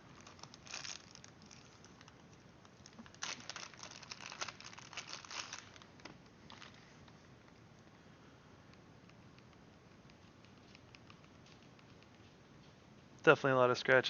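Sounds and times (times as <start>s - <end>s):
packaging crinkling and rustling: 0.0s - 7.2s
small crackles and clicks: 0.1s - 8.0s.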